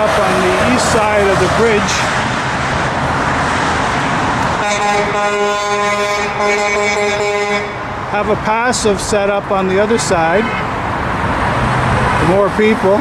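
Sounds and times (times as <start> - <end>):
highway traffic rushing: 0.0 - 13.0
vehicle horn blast: 4.6 - 7.8.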